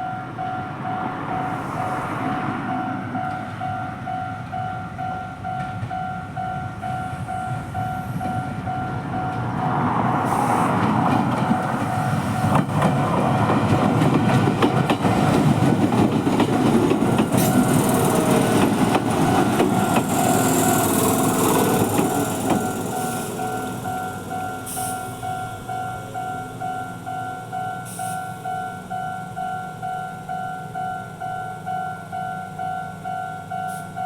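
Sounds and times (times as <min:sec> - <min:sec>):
electric train passing: 0:00.0 - 0:34.0
two-tone crossing bell: 0:17.1 - 0:34.0.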